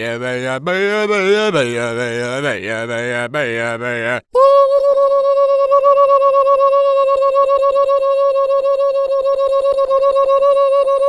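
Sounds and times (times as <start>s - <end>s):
person holding fluttering high tone: 4.4s - 11.0s.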